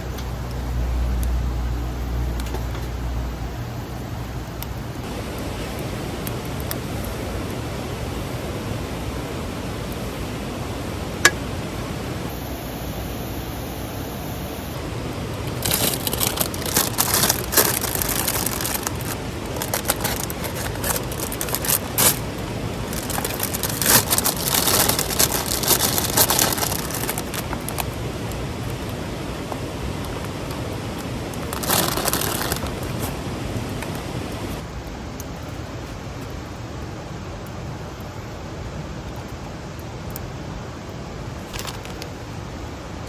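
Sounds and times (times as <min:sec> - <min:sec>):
mountain stream rushing: 0:04.9 - 0:37.8
crunching crinkling handling noise: 0:15.1 - 0:34.7, 0:41.4 - 0:42.4.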